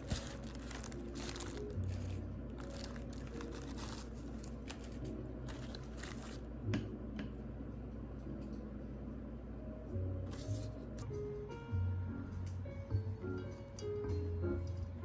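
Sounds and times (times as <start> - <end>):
light crunching: 0.0 - 6.4.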